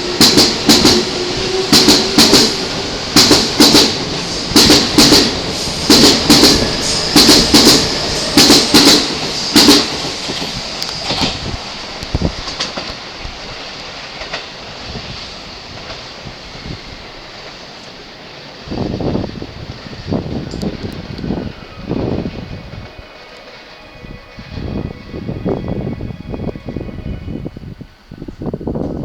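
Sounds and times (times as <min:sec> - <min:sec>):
train wheels clacking over rail joints: 0:00.0 - 0:18.0.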